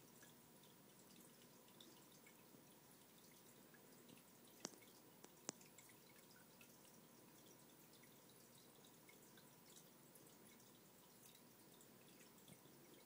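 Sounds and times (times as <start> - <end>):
aquarium water trickling: 0.0 - 13.0
tiny ticks: 4.1 - 8.1.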